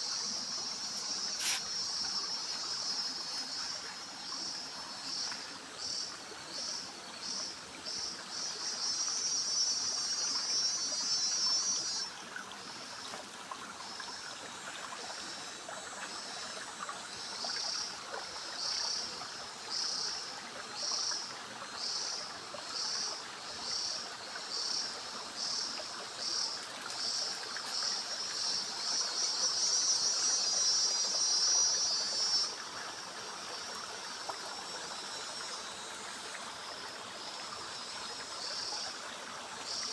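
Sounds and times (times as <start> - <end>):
forest stream rushing: 0.0 - 39.9
cicada buzzing: 0.1 - 2.0.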